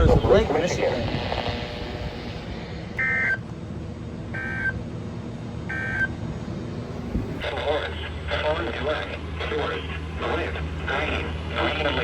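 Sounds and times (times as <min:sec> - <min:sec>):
buzzy digital data tones: 0:00.0 - 0:03.4.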